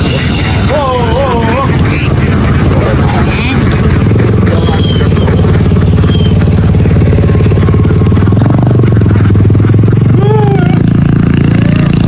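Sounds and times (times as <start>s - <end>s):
engine running loudly: 0.0s - 12.0s
rising-and-falling call: 4.5s - 9.2s.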